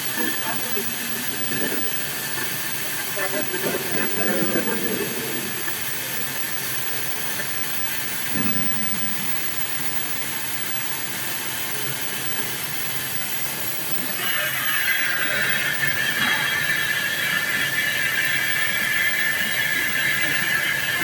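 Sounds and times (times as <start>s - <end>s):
high-pitched machine noise: 0.0s - 21.0s
sawing machine hissing: 11.8s - 21.0s.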